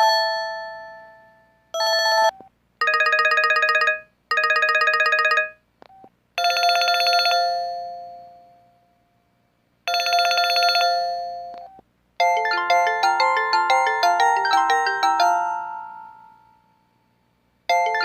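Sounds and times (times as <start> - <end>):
bell-like phone ring: 0.0 - 5.6, 6.4 - 8.6, 9.9 - 11.6, 12.2 - 16.9, 17.7 - 18.0
chiming ringtone melody: 0.0 - 5.6, 12.2 - 17.0, 17.7 - 18.0
warbling phone ringtone: 1.8 - 5.6, 6.4 - 8.1, 9.9 - 11.5, 12.2 - 16.7, 17.7 - 18.0.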